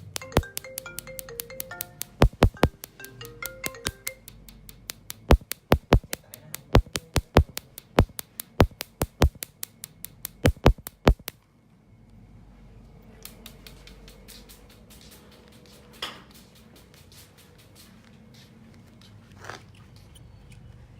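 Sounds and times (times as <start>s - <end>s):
rapid sharp clicks: 0.0s - 11.4s
faint steady hiss: 0.0s - 18.6s.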